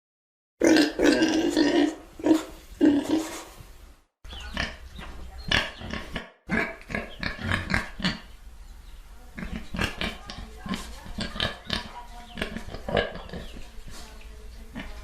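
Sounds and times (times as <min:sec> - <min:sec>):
pig grunting and oinking: 0:00.6 - 0:03.6, 0:04.3 - 0:08.4, 0:09.3 - 0:13.8, 0:14.7 - 0:15.0.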